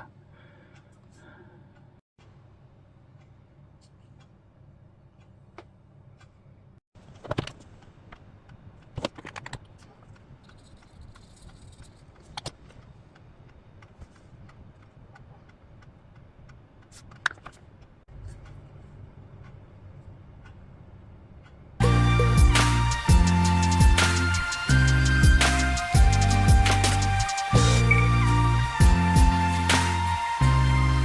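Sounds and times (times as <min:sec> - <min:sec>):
faint clicks and rustles: 0:03.1 - 0:20.6.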